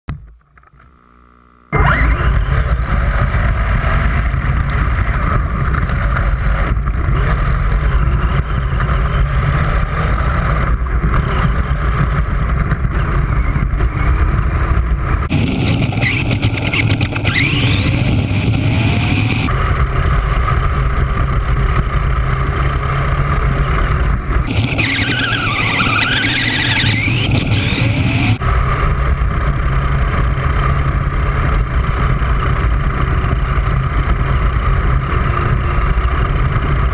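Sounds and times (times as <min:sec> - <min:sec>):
toy car motor whining: 0:01.7 - 0:02.8, 0:15.3 - 0:19.5, 0:24.5 - 0:28.4.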